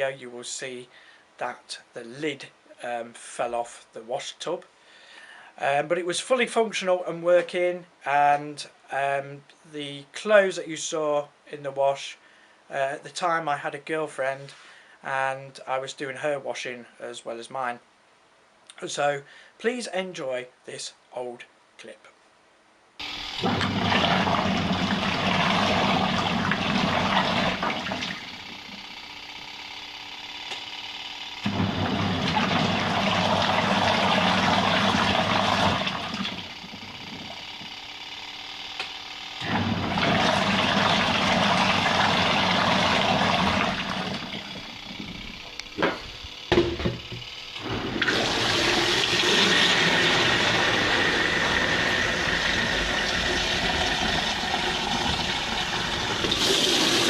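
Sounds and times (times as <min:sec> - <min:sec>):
washing machine water churning: 0:23.0 - 0:29.0, 0:31.4 - 0:38.4, 0:39.4 - 0:57.0
thin machine whine: 0:23.0 - 0:57.0
sharp knocks: 0:45.8 - 0:47.3.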